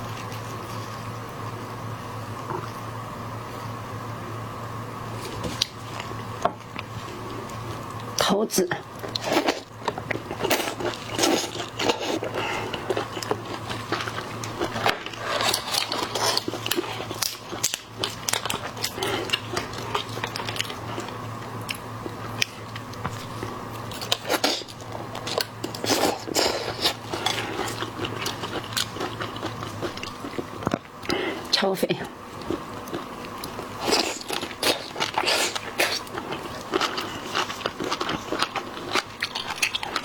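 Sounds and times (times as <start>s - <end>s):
steady low hum: 0.0s - 40.0s
biting and chewing: 9.0s - 31.2s, 32.4s - 40.0s.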